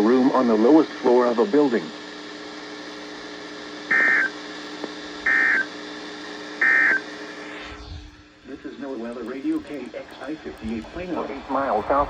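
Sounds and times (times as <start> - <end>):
radio hiss and hum: 0.0 - 12.0
buzzy digital data tones: 0.1 - 12.0.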